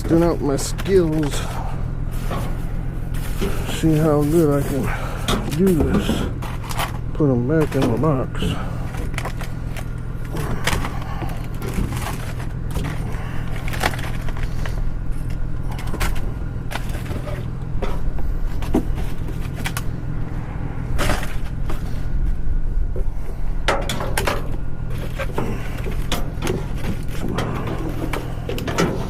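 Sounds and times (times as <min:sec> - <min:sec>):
vehicle idling hum: 0:00.0 - 0:29.0
plastic packs crinkling: 0:07.6 - 0:14.8.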